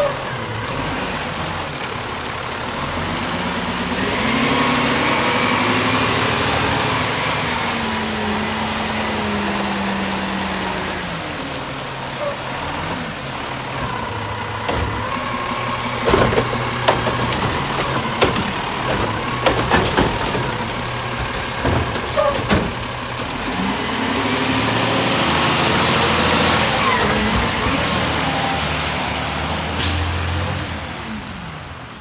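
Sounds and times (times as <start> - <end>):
garbage truck engine running: 0.0 - 31.5
sharp metal clanks and bangs: 14.3 - 23.7.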